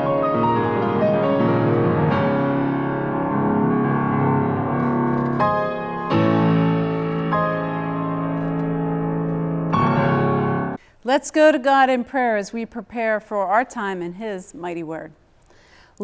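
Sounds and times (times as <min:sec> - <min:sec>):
piano chords and melody: 0:00.0 - 0:10.8.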